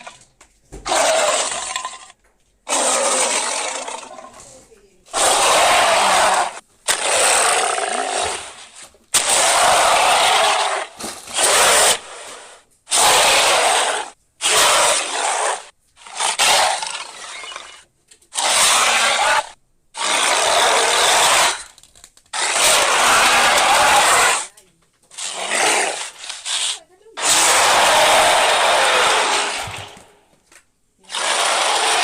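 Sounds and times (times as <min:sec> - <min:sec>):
dragon roars and growls: 0:02.7 - 0:04.4, 0:05.1 - 0:08.6, 0:09.2 - 0:17.8, 0:22.4 - 0:24.5, 0:25.2 - 0:30.0, 0:31.1 - 0:32.0.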